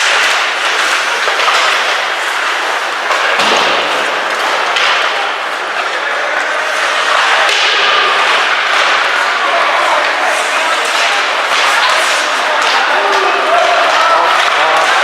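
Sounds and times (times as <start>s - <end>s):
hockey sticks knocking puck: 0.0s - 15.0s
skates rushing on ice: 0.0s - 15.0s
thud against boards: 3.4s - 5.1s.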